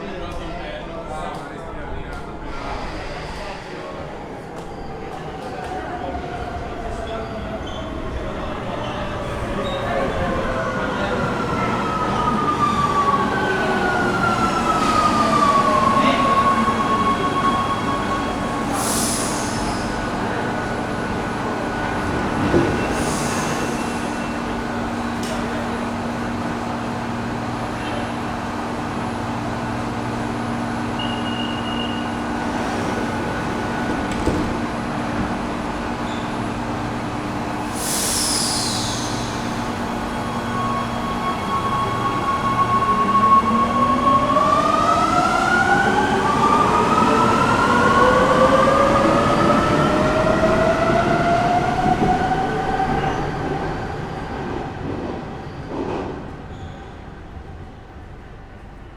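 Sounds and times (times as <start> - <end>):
air hiss: 18.6 - 20.0, 37.6 - 39.9.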